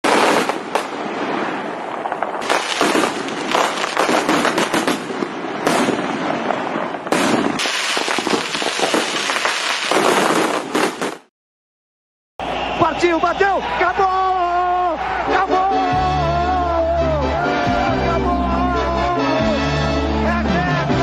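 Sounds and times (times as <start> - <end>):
firecrackers popping: 0.0 - 11.3.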